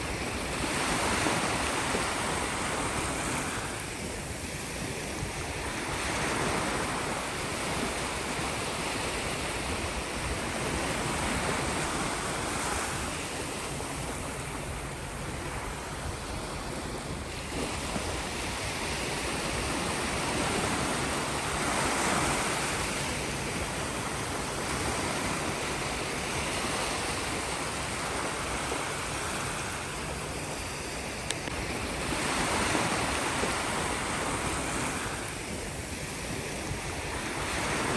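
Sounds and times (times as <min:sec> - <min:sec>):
sea waves breaking on shore: 0:00.0 - 0:37.9.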